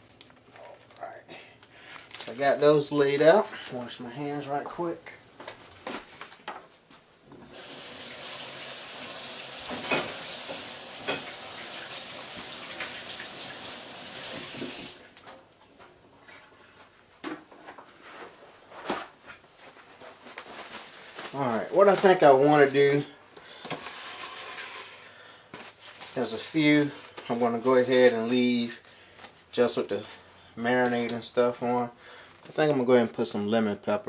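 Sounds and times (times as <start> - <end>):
tap water running: 7.4 - 15.1.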